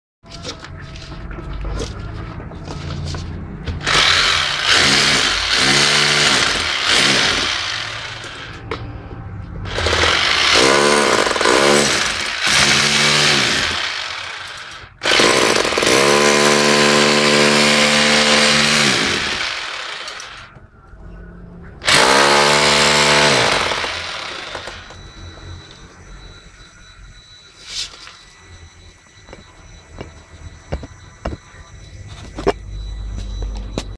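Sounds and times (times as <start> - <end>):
electric jackhammer: 3.8 - 8.6, 9.7 - 20.5, 21.8 - 25.0.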